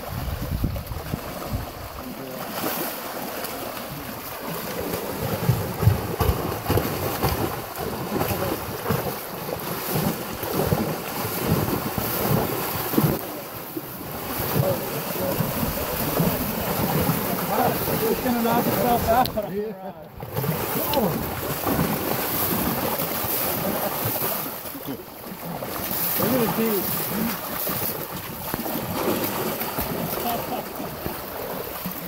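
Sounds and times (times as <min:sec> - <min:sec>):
wind buffeting microphone: 0:00.0 - 0:02.0
sea water washing around boat: 0:00.0 - 0:32.0.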